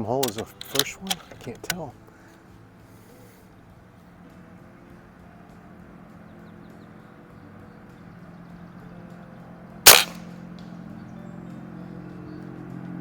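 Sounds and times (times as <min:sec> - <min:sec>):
air rifle shot crack: 0:09.9 - 0:10.4.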